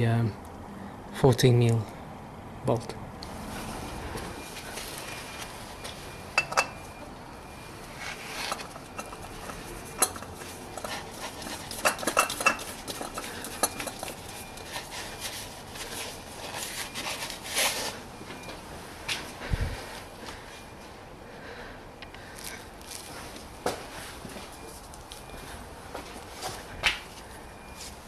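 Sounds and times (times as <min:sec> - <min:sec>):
metal tools clinking: 0:05.4 - 0:07.0, 0:08.0 - 0:18.0.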